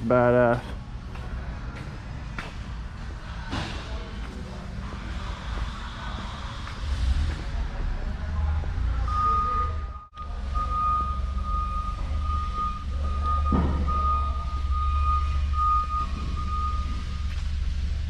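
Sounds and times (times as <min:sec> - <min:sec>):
high-pitched electronic beeping: 0:09.0 - 0:17.3.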